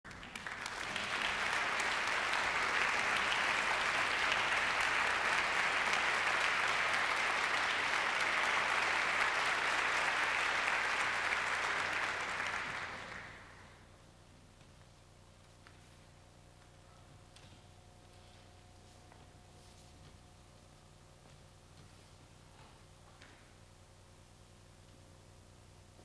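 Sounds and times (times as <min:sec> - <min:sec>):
audience applauding: 0:00.1 - 0:13.8.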